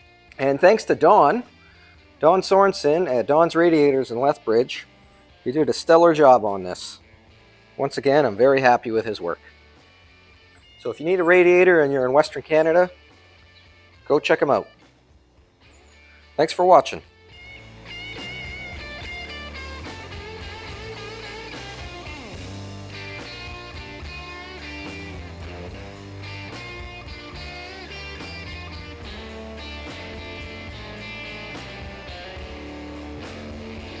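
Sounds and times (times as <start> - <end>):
steady bass line: 0.0 - 34.0
plucked electric guitar: 15.6 - 34.0.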